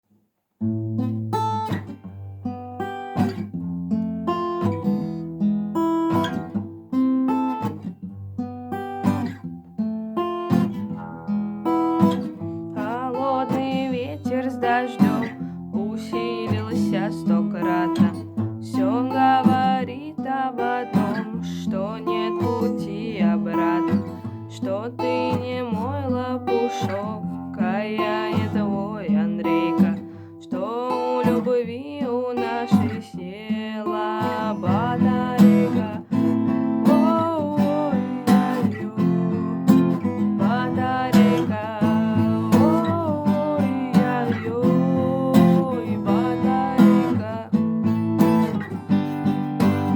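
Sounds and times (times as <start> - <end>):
acoustic guitar strumming: 0.6 - 49.9
person singing: 11.9 - 49.9.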